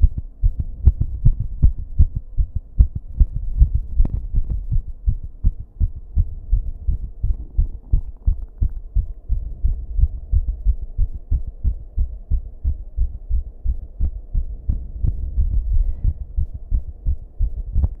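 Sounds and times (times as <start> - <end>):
heartbeat thumps: 0.0 - 18.0.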